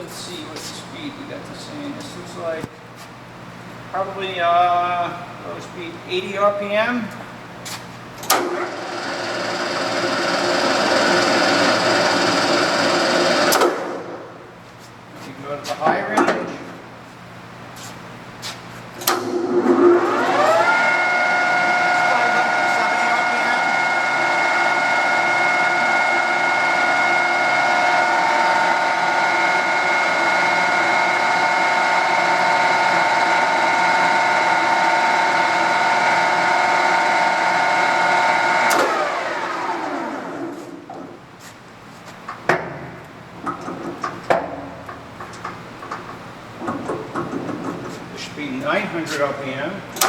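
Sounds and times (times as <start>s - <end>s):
lathe gear whine: 8.4s - 13.6s, 19.2s - 40.6s
sharp clunks and clicks: 42.3s - 47.9s.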